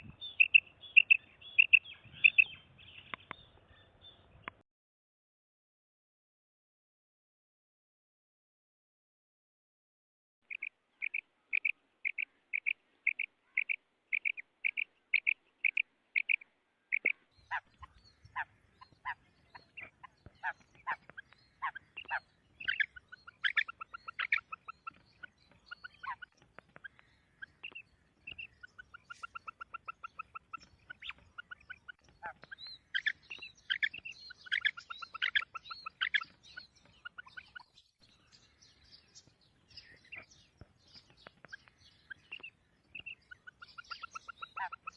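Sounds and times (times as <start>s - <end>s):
quail calling: 0.0s - 2.6s, 10.5s - 38.6s, 41.2s - 44.9s
faint low background noise: 10.4s - 44.9s.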